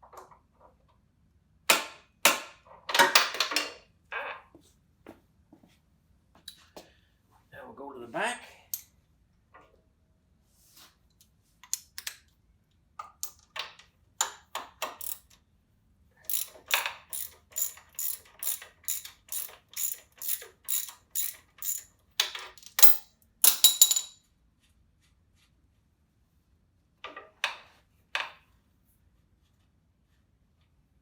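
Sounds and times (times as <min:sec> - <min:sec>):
ratchet wrench clicking: 0:14.8 - 0:15.3, 0:16.3 - 0:21.9.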